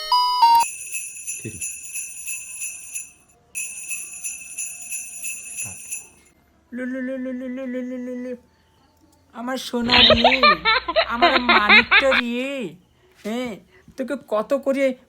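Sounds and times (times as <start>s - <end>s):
bells jingling: 0.6s - 6.3s.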